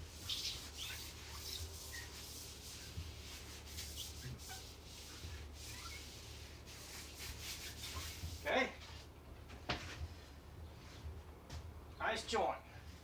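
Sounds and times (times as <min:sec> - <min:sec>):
rubbing on plastic sheet: 0:00.0 - 0:09.1
small squeaks: 0:00.2 - 0:02.2, 0:03.8 - 0:06.3.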